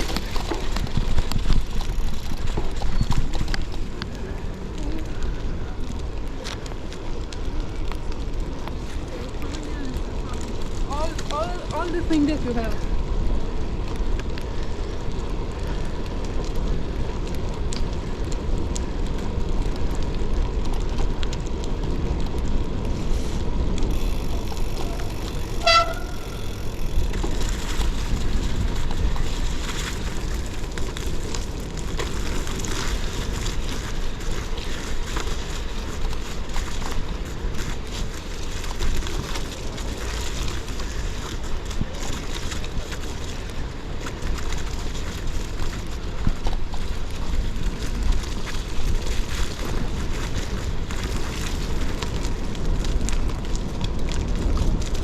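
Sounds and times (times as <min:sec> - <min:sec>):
bike tyre noise: 0:00.0 - 0:55.0
wind on camera: 0:00.0 - 0:55.0
crunching clicks: 0:23.8 - 0:36.9.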